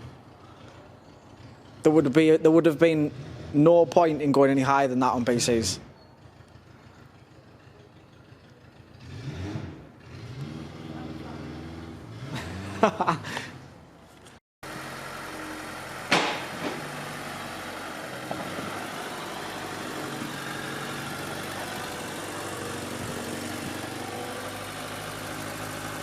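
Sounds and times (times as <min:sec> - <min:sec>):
car engine idling: 0:14.6 - 0:26.0
sharp thump: 0:16.1 - 0:16.9.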